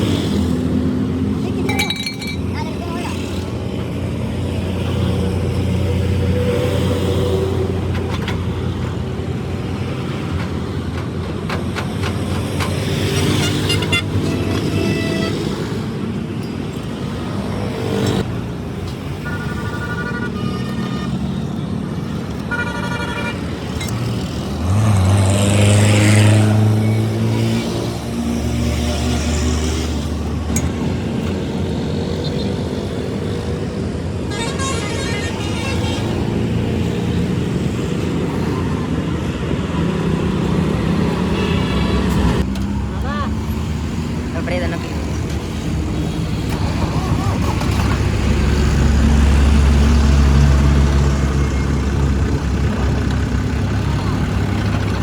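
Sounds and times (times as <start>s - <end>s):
heavy engine: 0.0s - 55.0s
vehicle engines running: 0.0s - 55.0s
car horns tooting: 13.1s - 15.8s, 19.1s - 21.6s, 22.3s - 23.8s, 34.2s - 36.7s.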